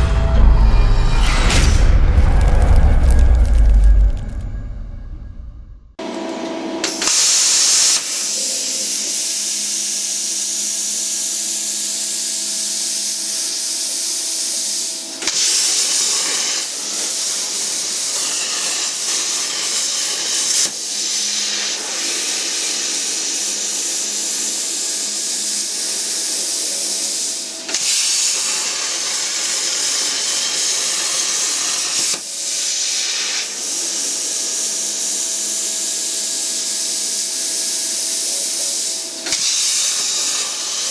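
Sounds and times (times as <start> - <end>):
gas jet hissing: 14.8 - 40.9.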